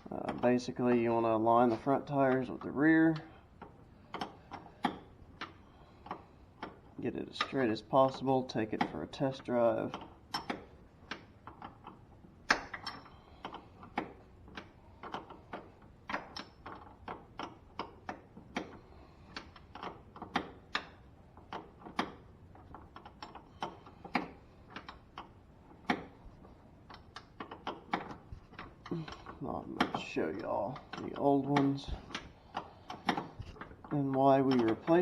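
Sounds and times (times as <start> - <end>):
metallic clicks of hand tools: 26.8 - 35.0.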